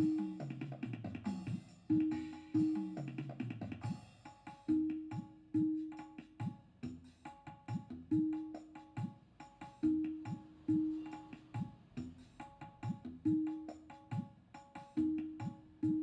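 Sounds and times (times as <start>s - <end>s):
hand drum rhythm: 0.0s - 16.0s.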